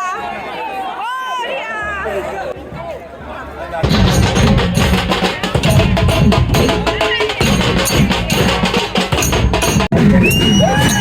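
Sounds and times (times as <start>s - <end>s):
percussion-heavy procession music: 3.8s - 11.0s.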